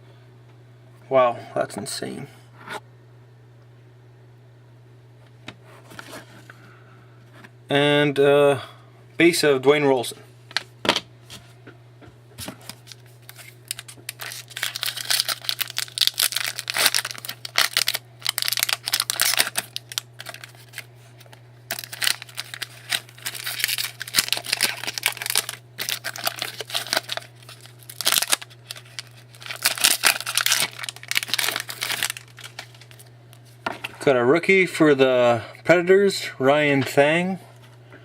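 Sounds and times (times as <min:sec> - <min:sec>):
steady low hum: 0:00.0 - 0:38.0
foil wrappers tearing and crinkling: 0:12.4 - 0:33.1.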